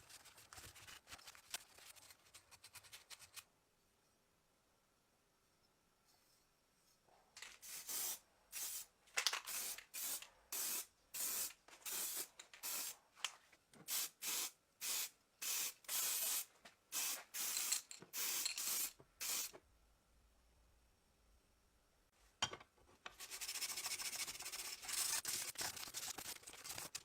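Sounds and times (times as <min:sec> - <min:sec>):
aerosol spray can hissing bursts: 0:07.6 - 0:08.9, 0:09.5 - 0:13.0, 0:13.9 - 0:19.5.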